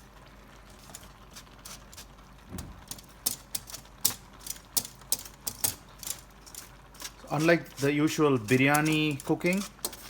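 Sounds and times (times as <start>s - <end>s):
utensil clicking against pot: 2.8s - 10.0s.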